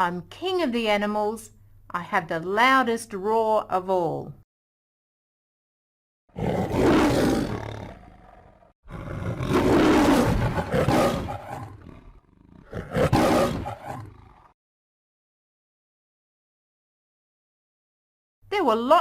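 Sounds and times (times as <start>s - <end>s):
lion roaring: 6.3s - 14.6s.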